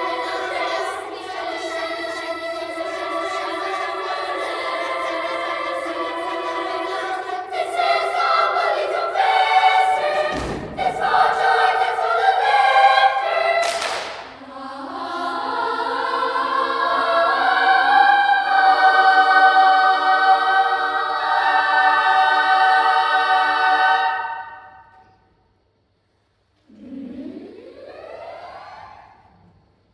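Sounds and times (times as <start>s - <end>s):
children's choir singing: 0.0s - 25.2s, 26.7s - 29.6s
low thud: 10.3s - 11.1s.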